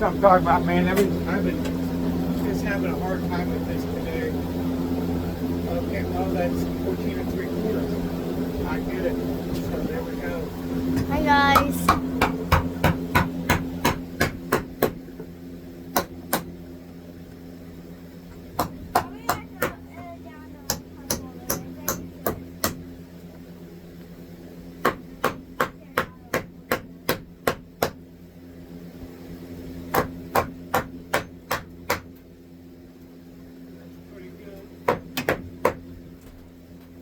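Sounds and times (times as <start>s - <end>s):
steady low hum: 0.0s - 37.0s
hammer striking wood: 11.0s - 15.0s, 15.9s - 16.5s, 18.6s - 19.8s, 20.7s - 22.8s, 24.8s - 28.0s, 29.9s - 32.1s, 34.8s - 35.8s.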